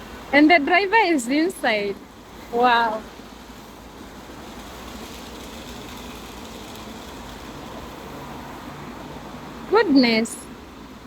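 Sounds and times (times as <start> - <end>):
car wash water spray hiss: 1.6 - 9.7.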